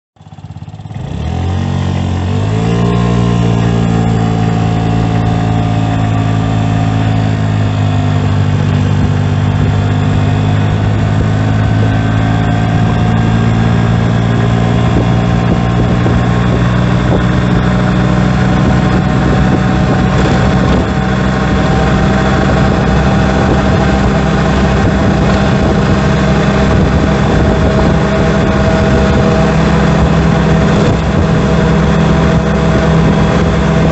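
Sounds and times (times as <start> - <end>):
drivetrain drone and whine: 0.2 - 33.9
scooter engine running: 0.2 - 33.9.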